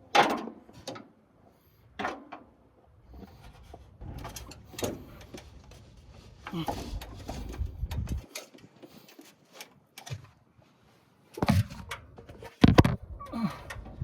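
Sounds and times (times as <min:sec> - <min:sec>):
clicks knocks and rustling: 0:03.4 - 0:10.4, 0:11.3 - 0:13.0.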